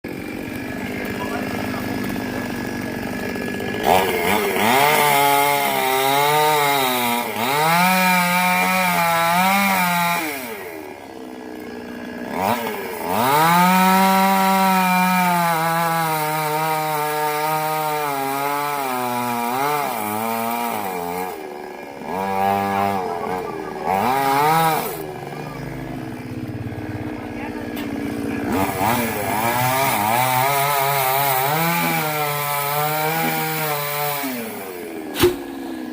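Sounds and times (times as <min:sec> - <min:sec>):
chainsaw cutting wood: 0:00.1 - 0:35.9.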